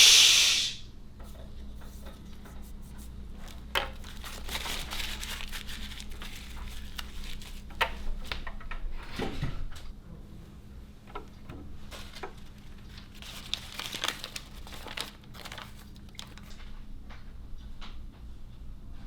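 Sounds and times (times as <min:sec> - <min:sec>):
person hushing: 0:00.0 - 0:00.8
rustling: 0:03.4 - 0:07.7.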